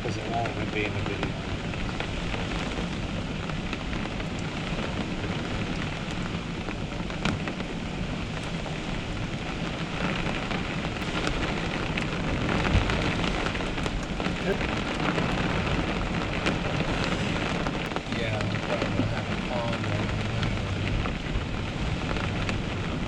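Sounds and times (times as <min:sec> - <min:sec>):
low rumble: 0:00.0 - 0:23.0
raindrops ticking: 0:00.0 - 0:23.0
steady rain falling: 0:00.0 - 0:23.0.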